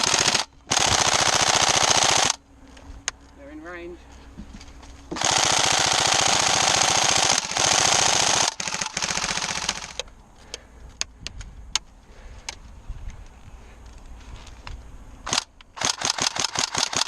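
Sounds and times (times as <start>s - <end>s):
airsoft rifle full auto bursts: 0.0s - 2.4s, 5.2s - 10.0s, 15.2s - 17.0s.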